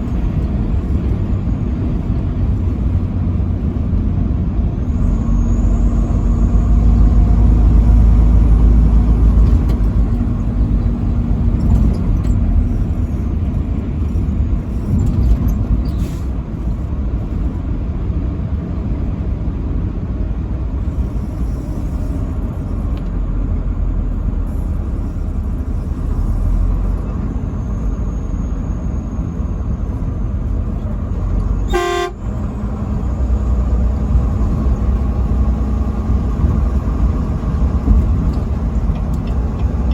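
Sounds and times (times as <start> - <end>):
vehicle road and engine rumble: 0.0 - 39.9
truck air horn: 31.6 - 32.4.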